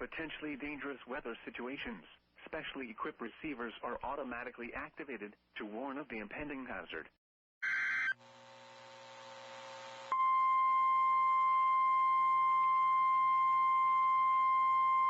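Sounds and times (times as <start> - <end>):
steady high warning tone: 10.1 - 15.0.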